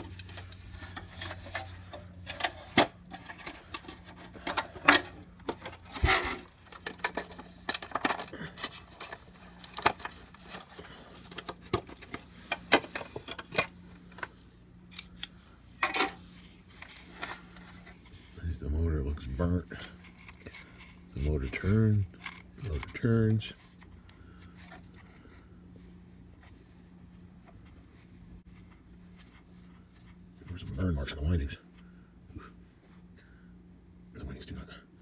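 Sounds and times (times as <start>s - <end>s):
plastic and metal parts clattering: 0.0s - 18.2s
faint steady hum: 0.0s - 35.0s.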